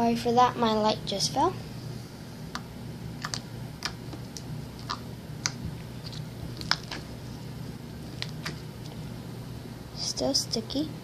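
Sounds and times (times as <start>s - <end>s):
slime being kneaded by hand: 2.5s - 7.2s, 7.9s - 9.0s.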